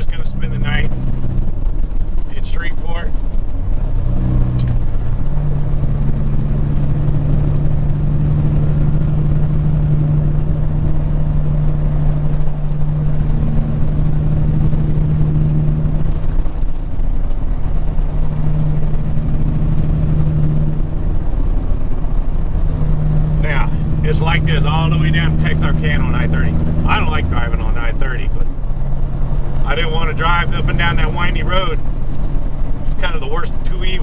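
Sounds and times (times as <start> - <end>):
truck diesel engine droning: 0.0 - 34.0.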